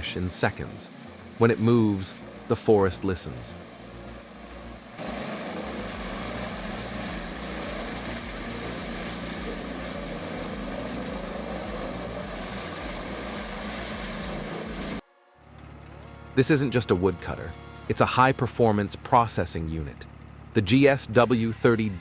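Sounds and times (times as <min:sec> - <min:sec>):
wood chipper engine drone: 0:00.0 - 0:22.0.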